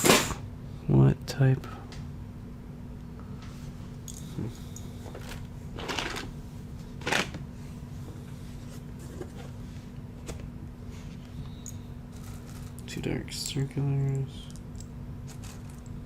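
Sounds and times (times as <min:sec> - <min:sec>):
plastic pieces rustling and clicking: 0:05.1 - 0:06.3, 0:12.2 - 0:12.9, 0:14.0 - 0:16.0.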